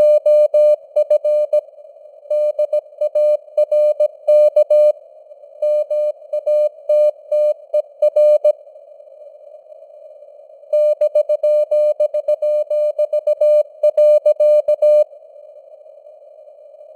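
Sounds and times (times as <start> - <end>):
morse code tone: 0.0 - 1.6, 10.8 - 15.0.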